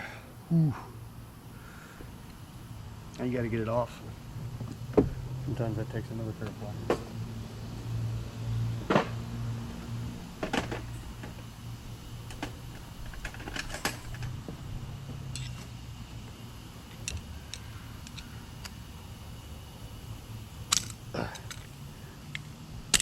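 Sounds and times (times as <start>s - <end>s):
low steady hum: 0.0s - 23.0s
metal hand tools clinking: 15.3s - 15.7s, 20.7s - 23.0s.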